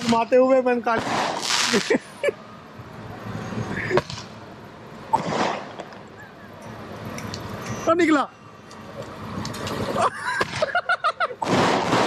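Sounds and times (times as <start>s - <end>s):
firework cracks: 0.0s - 2.1s, 4.0s - 4.4s, 5.1s - 6.2s, 11.4s - 12.0s
firework hiss: 0.0s - 2.2s, 3.2s - 4.4s, 5.1s - 6.1s, 11.4s - 12.0s.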